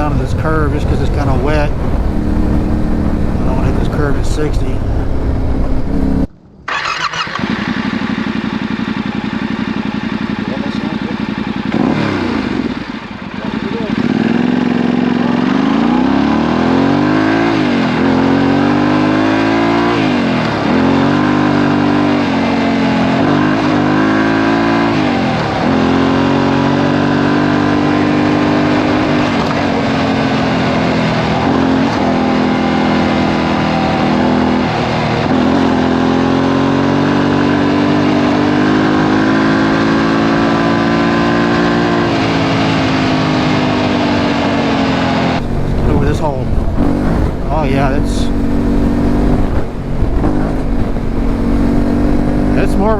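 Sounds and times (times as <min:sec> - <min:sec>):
motorcycle engine accelerating: 0:00.0 - 0:52.9.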